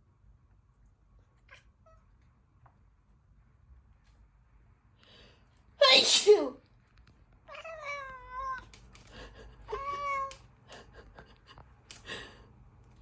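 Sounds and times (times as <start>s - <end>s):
cat meowing: 7.5s - 8.7s, 9.7s - 10.4s.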